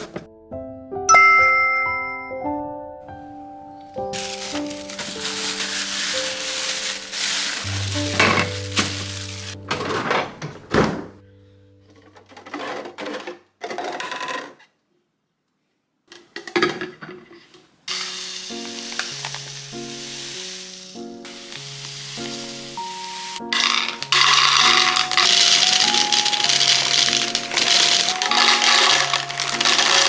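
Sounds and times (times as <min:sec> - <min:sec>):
kitchen items thunking and clattering: 0:00.0 - 0:00.3, 0:04.1 - 0:11.2, 0:11.9 - 0:14.6, 0:16.1 - 0:18.0, 0:22.2 - 0:30.0
light background music: 0:00.0 - 0:12.8, 0:17.9 - 0:30.0.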